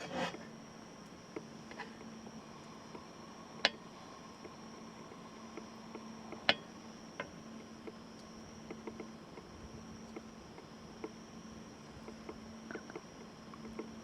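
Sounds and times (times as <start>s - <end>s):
insects trilling: 0.0s - 14.0s
faint ticks: 2.9s - 14.0s.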